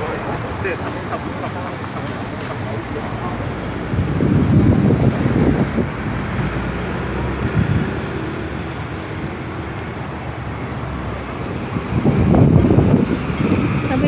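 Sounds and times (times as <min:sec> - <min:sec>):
passing traffic: 0:00.0 - 0:14.0
wind buffeting microphone: 0:00.0 - 0:14.0.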